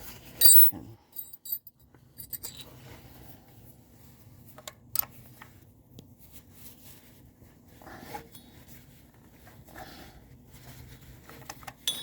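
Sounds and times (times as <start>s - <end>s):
wrench clicks and scrapes: 2.2s - 2.7s.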